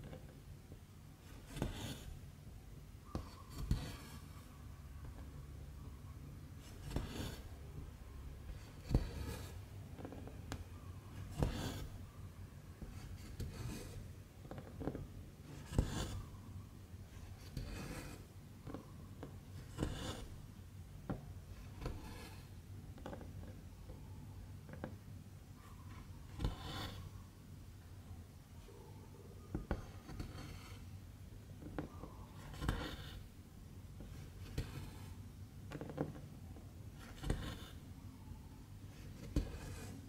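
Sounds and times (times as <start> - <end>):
low steady hum: 0.0 - 40.0
thread rasping through cloth: 1.2 - 2.2, 6.6 - 7.6, 8.5 - 12.1, 26.3 - 27.1, 36.9 - 37.8, 38.9 - 40.0.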